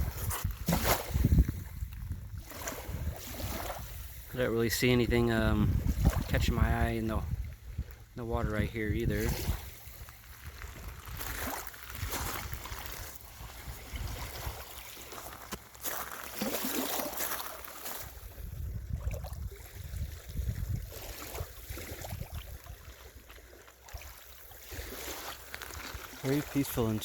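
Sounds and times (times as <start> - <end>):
wind rumbling on microphone: 0.0 - 15.4, 18.0 - 23.1
small waves lapping at shore: 0.0 - 27.0.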